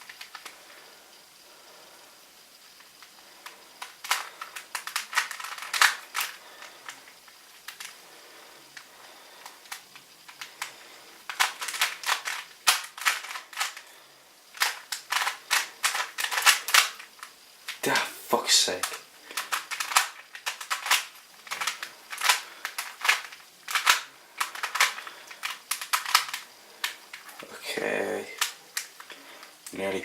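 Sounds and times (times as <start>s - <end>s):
puzzle cube layers clicking: 11.3s - 13.8s, 18.8s - 27.2s.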